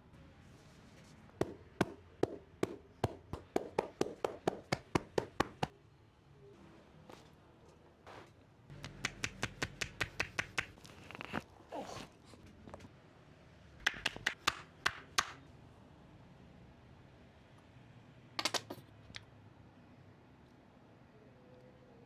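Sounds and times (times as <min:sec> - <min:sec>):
hands slapping body: 0:01.4 - 0:05.7, 0:08.7 - 0:11.0, 0:13.8 - 0:15.4, 0:18.4 - 0:18.8.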